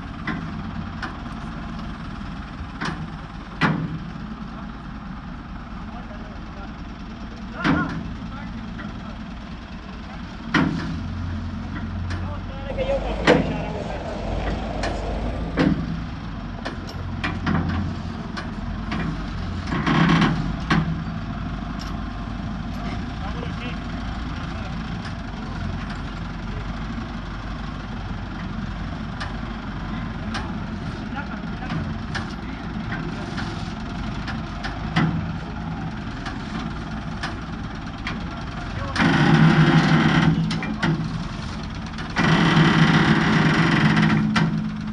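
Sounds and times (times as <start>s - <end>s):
low machine hum: 12.3s - 16.9s.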